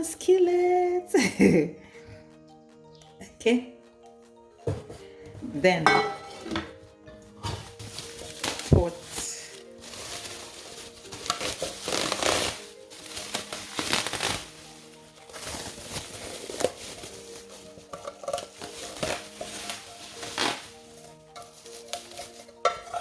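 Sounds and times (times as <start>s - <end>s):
background music: 0.0s - 23.0s
packaging crinkling and rustling: 7.5s - 23.0s.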